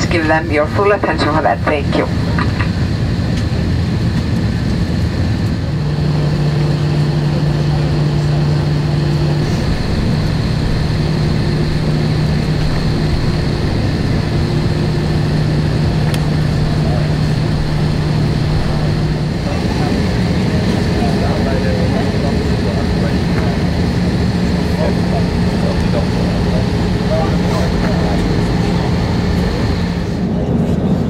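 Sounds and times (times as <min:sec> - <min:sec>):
engine and ventilation rush: 0:00.0 - 0:31.0
low hum: 0:00.0 - 0:31.0.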